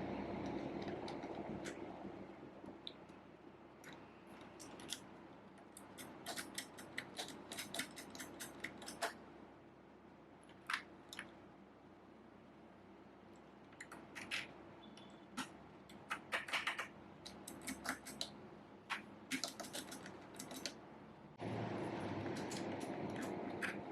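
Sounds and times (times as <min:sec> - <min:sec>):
keyboard plastic clicks and taps: 0:15.4 - 0:20.8.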